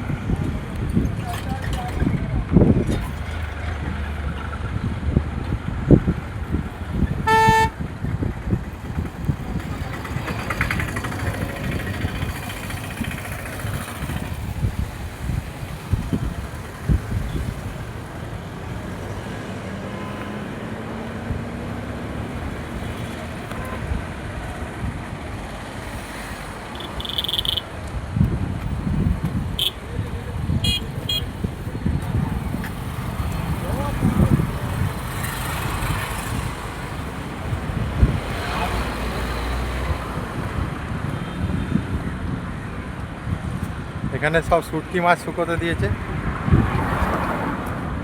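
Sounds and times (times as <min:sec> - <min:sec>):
road traffic rumble: 0:00.0 - 0:48.0
vehicle horn toot: 0:07.2 - 0:07.8, 0:26.8 - 0:27.6, 0:29.6 - 0:29.8, 0:30.6 - 0:31.3.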